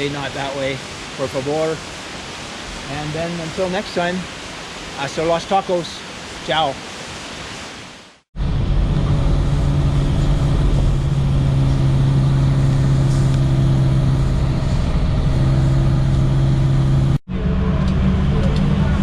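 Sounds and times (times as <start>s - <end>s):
vehicle engine low drone: 8.4s - 19.0s.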